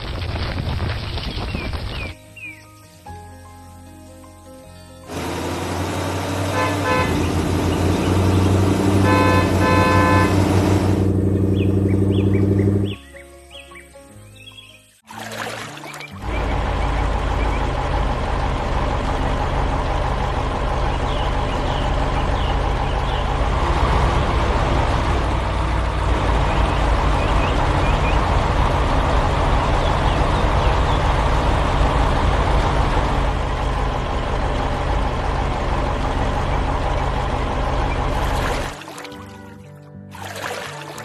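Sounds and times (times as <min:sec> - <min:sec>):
heavy diesel engine running: 0:05.1 - 0:12.9, 0:16.2 - 0:38.8.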